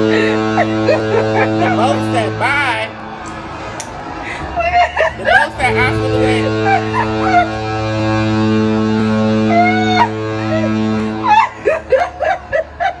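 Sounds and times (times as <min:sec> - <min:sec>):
ship horn low blast: 0:00.0 - 0:12.0
voices calling: 0:00.5 - 0:10.1.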